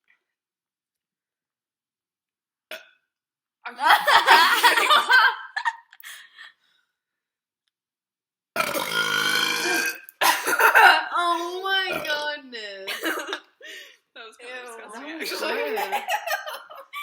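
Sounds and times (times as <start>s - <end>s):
girls burping: 3.7s - 5.3s, 8.6s - 16.6s
girls laughing: 3.7s - 6.5s, 10.2s - 11.9s, 12.8s - 17.0s.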